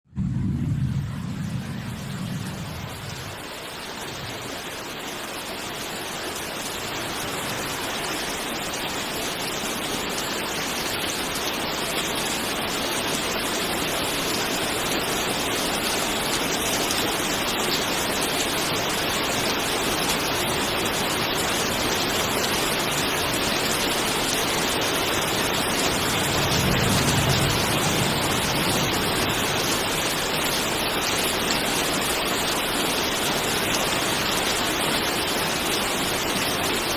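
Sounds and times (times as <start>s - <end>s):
low rumble: 0.0s - 4.4s
steady rain falling: 0.1s - 36.9s.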